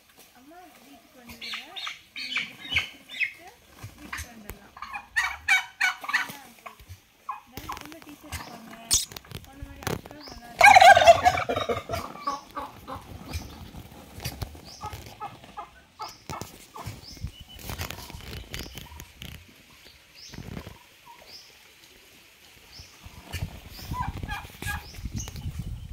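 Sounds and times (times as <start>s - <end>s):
turkey gobbling: 1.2s - 9.1s, 10.5s - 17.0s, 23.1s - 25.0s
turkey short calls and clicks: 4.0s - 9.4s, 14.2s - 21.3s.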